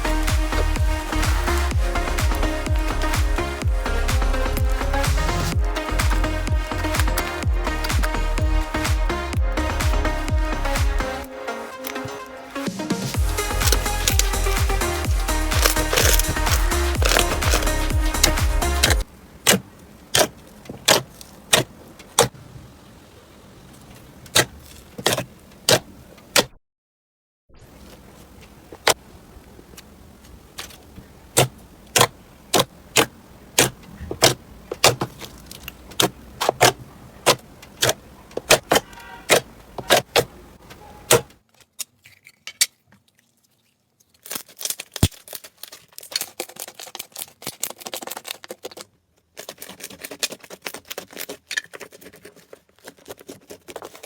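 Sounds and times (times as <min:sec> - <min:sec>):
crunchy slime crackling: 0:00.0 - 0:12.6, 0:13.2 - 0:22.3, 0:27.8 - 0:54.0
slime popping: 0:15.5 - 0:22.3.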